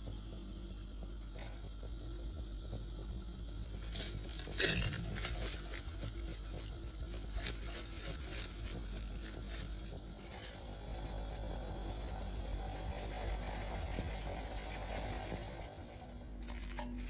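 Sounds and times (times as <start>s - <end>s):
steady low hum: 0.0s - 17.0s
rustling and scraping strokes: 3.7s - 10.8s, 16.3s - 17.0s.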